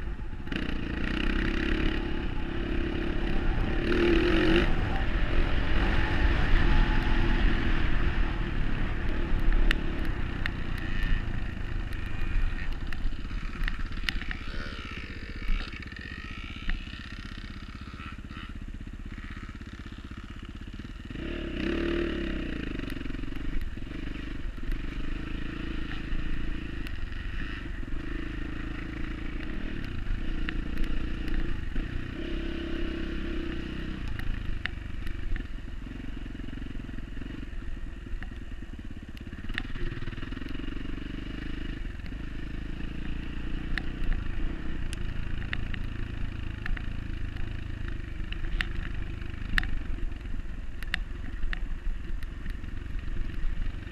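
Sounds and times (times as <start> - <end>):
dirt bike engine revving: 0.0 - 35.5.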